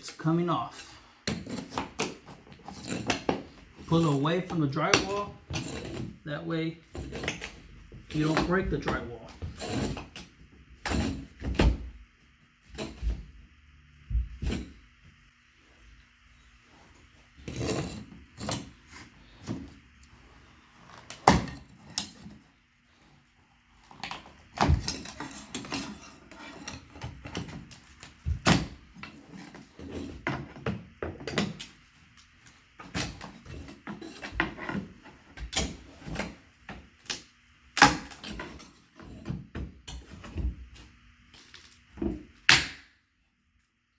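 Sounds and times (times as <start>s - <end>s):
wooden trim pried with crowbar: 6.9s - 11.9s, 23.9s - 31.7s, 37.8s - 40.5s.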